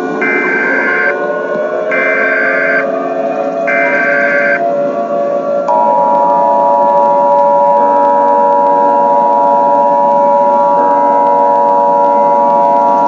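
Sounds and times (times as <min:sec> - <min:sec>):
harsh two-tone alert signal: 0:00.2 - 0:01.1, 0:01.9 - 0:02.8, 0:03.7 - 0:04.6, 0:05.7 - 0:13.0.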